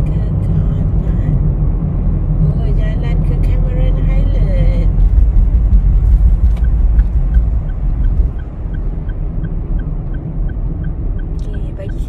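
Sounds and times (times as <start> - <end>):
car road and engine rumble: 0.0 - 12.0
light even ticking: 5.1 - 12.0.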